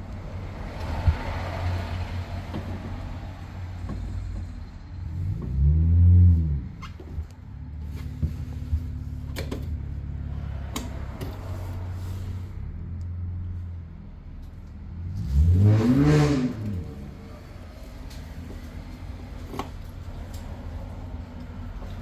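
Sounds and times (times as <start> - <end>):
car engine running and revving: 0.0 - 22.0.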